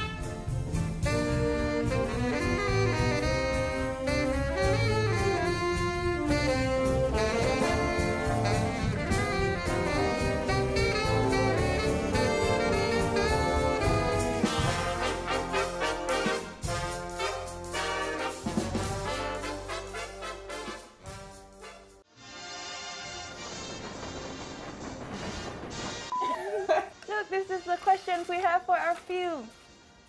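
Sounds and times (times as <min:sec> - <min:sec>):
upbeat jazz with brass and saxophone: 0:00.0 - 0:23.4.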